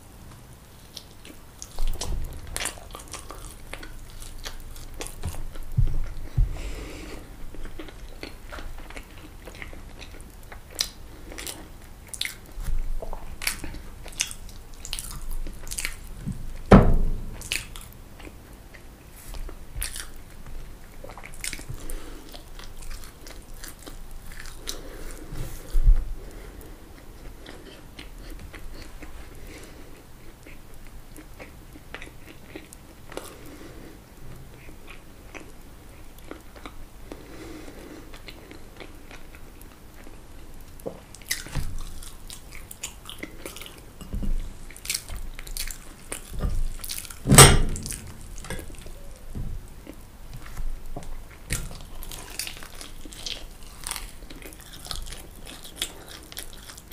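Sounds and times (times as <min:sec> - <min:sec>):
wet chewing: 0:00.8 - 0:06.3, 0:07.0 - 0:16.7, 0:17.3 - 0:33.6, 0:34.5 - 0:56.9
dull thump: 0:16.3 - 0:17.6, 0:47.3 - 0:48.2, 0:49.4 - 0:49.6.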